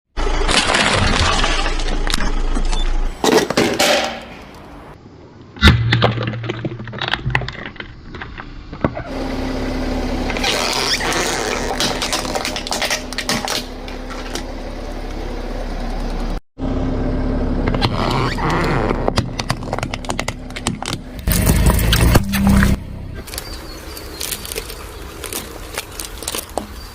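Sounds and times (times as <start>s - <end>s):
objects crunching under tyres: 0.2s - 9.2s, 10.2s - 16.2s, 17.6s - 26.9s
vehicle engine hum: 7.2s - 26.9s.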